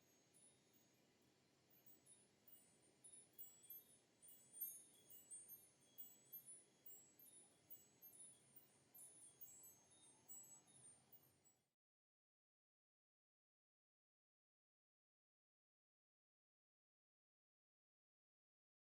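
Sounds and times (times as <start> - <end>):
faint tinkling chimes: 0.0 - 11.7.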